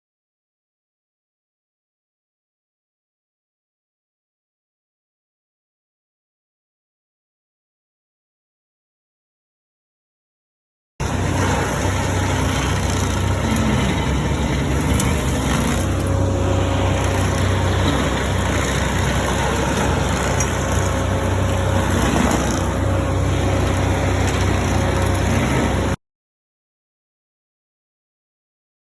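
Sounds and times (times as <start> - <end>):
cutter wheel chewing wood: 11.0 - 26.0
stump grinder engine droning: 11.0 - 26.0.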